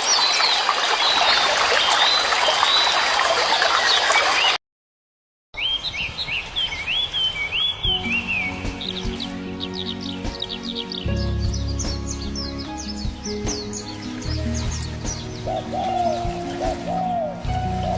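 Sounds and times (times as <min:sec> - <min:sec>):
flowing water: 0:00.0 - 0:04.6, 0:12.6 - 0:17.9
bird whistled call: 0:05.6 - 0:10.0
small birds chirping: 0:05.6 - 0:17.9.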